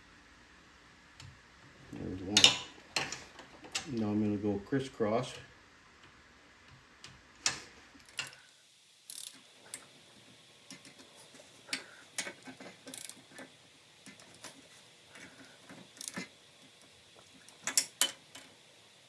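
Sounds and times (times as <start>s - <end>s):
torque wrench clicking: 9.1s - 9.9s, 16.8s - 18.5s.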